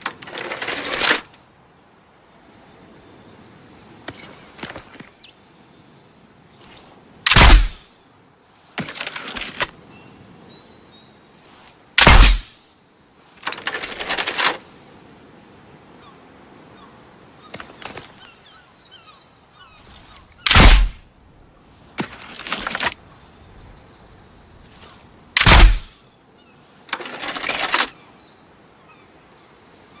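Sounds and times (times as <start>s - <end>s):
quiet rattling noise: 0.0s - 1.5s, 8.7s - 9.8s, 13.3s - 14.6s, 17.5s - 18.3s, 22.0s - 23.0s, 26.9s - 27.9s
slingbow shot snap: 7.3s - 7.8s, 12.0s - 12.5s, 20.5s - 21.0s, 25.4s - 25.9s.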